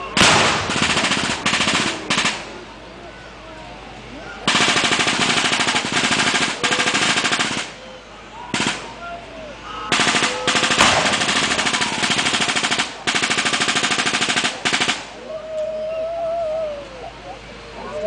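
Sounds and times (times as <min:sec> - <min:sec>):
machine-gun fire bursts: 0:00.2 - 0:02.5, 0:04.5 - 0:07.9, 0:08.5 - 0:09.0, 0:09.9 - 0:15.2.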